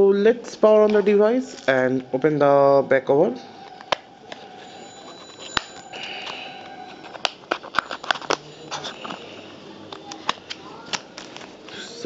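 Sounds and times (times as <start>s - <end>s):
plastic clicks and snaps: 9.9s - 11.8s.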